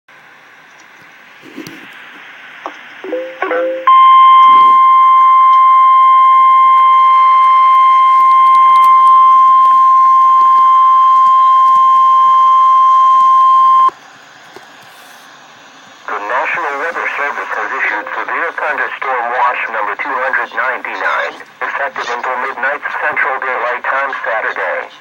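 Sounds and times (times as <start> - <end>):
steady alarm tone: 3.0 - 13.9.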